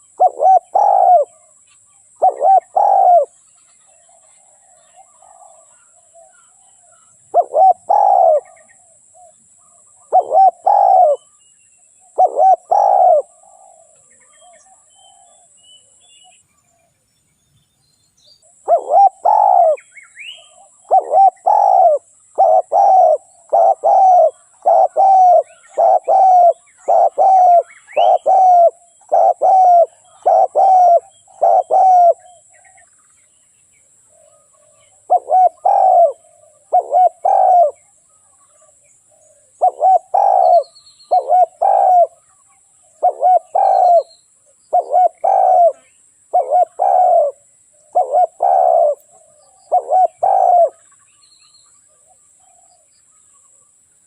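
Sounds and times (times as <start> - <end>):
dove cooing: 0.0 - 3.4, 4.0 - 11.3, 12.0 - 15.6, 18.6 - 32.8, 34.1 - 50.9.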